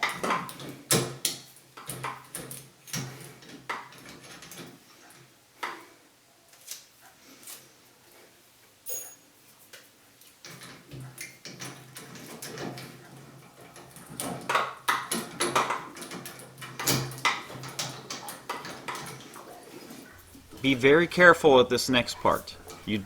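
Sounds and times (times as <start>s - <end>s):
hand tools clicking and scraping: 10.5s - 23.0s
low steady hum: 20.2s - 23.0s.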